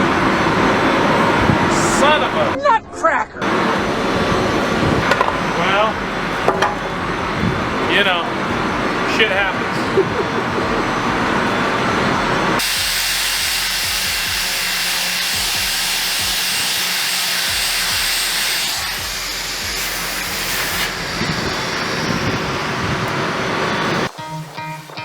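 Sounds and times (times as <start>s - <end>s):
loud steady hiss: 12.5s - 25.0s.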